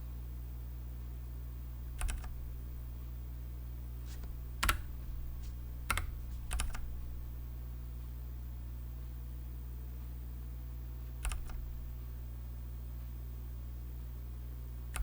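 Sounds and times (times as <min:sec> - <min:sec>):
steady low hum: 0:00.0 - 0:15.0
mechanical keyboard keystrokes: 0:02.0 - 0:02.5, 0:04.2 - 0:07.2, 0:11.2 - 0:11.9.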